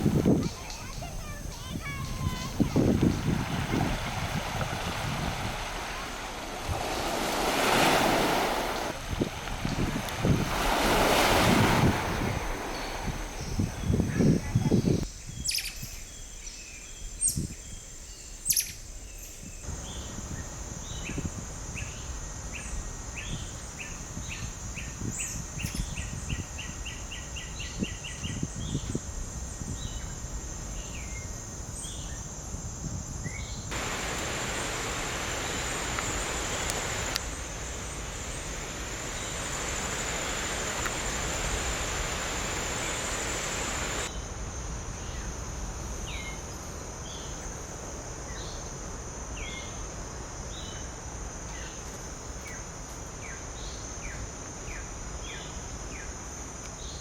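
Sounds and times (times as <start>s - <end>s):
birds chirping: 0.0s - 3.9s, 12.1s - 17.4s, 33.7s - 44.1s
insects droning: 0.0s - 57.0s
steady rushing noise: 33.7s - 44.1s.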